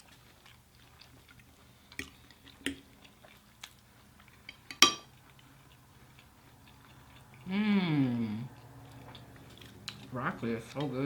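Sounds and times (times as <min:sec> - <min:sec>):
chewing food: 0:00.0 - 0:11.0
sharp clink: 0:04.7 - 0:05.1.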